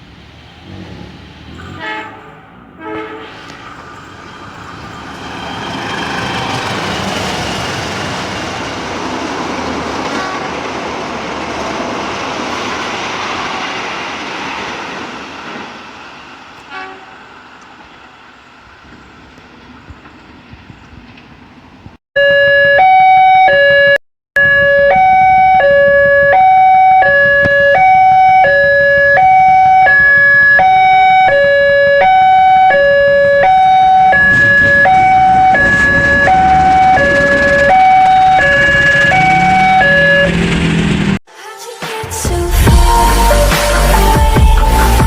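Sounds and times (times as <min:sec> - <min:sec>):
level-crossing two-tone alarm: 0:22.2 - 0:40.6
rumbling noise: 0:33.0 - 0:41.2.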